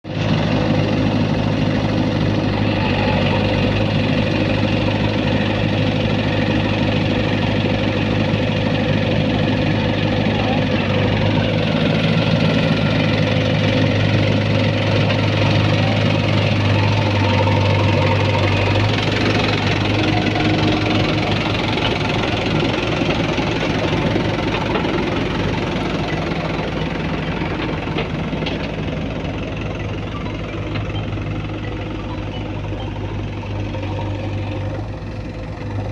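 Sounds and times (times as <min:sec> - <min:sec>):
diesel engine humming: 0:00.0 - 0:35.9.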